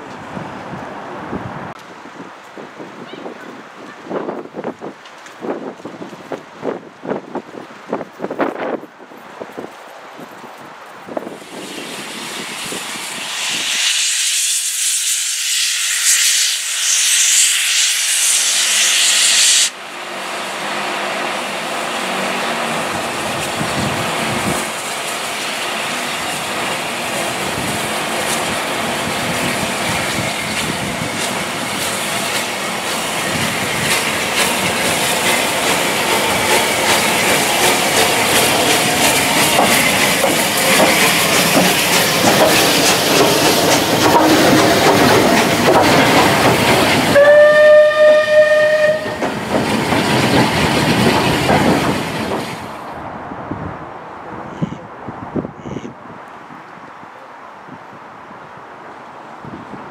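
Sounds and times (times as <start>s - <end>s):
train wheels rumbling on rails: 0.0s - 53.8s
steam locomotive hissing steam: 11.2s - 52.8s.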